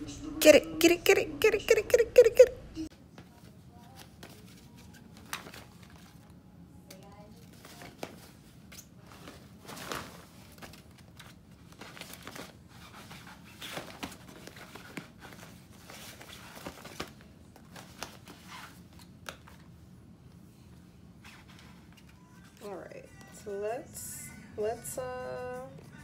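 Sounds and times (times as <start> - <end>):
light rustling and crinkling: 3.1 - 6.4, 7.0 - 22.7.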